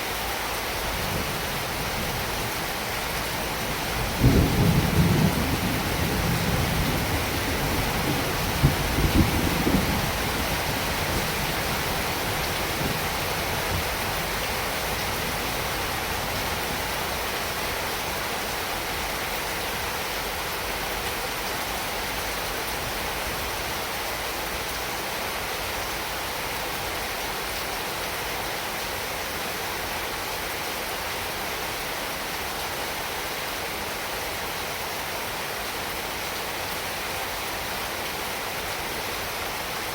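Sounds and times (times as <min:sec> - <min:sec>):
heavy rain: 0:00.0 - 0:39.9
thunder rumbles: 0:03.0 - 0:14.4.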